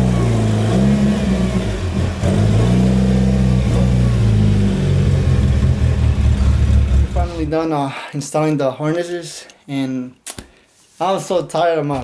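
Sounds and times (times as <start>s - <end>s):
car engine revving: 0.0s - 7.5s.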